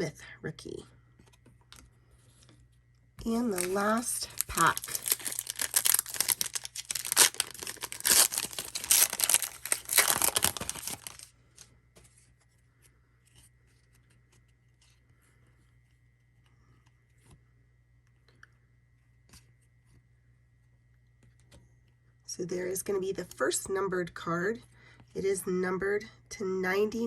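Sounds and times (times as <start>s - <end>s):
wrapper tearing and crinkling: 3.4s - 11.3s.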